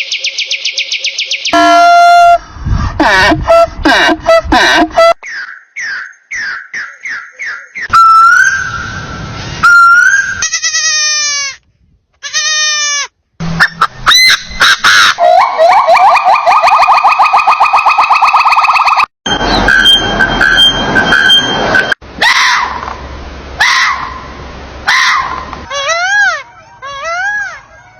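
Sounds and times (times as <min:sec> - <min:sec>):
bleat-like animal calls: 0:12.2 - 0:13.1.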